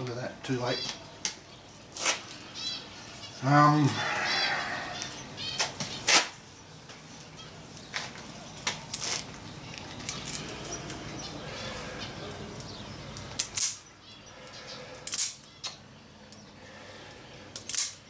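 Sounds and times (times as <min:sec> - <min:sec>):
low steady background noise: 0:00.0 - 0:18.0
wire strippers clicking: 0:12.3 - 0:14.2.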